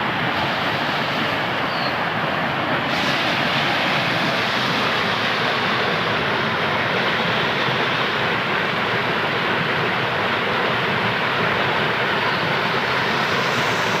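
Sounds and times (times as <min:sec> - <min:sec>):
waterfall roaring: 0:00.0 - 0:14.0.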